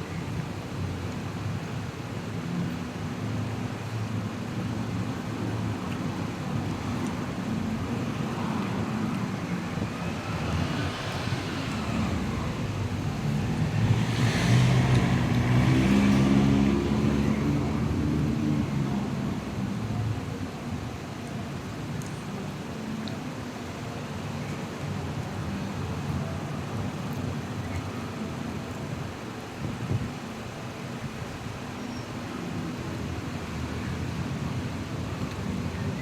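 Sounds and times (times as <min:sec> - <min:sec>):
steady engine hum: 0:00.0 - 0:31.6
vehicle passing close by: 0:07.6 - 0:19.7.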